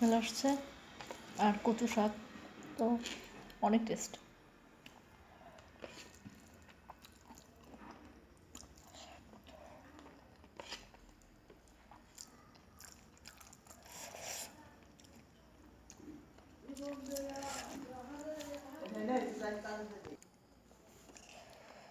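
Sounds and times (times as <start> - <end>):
person chewing food: 4.8 - 19.4, 20.2 - 21.9.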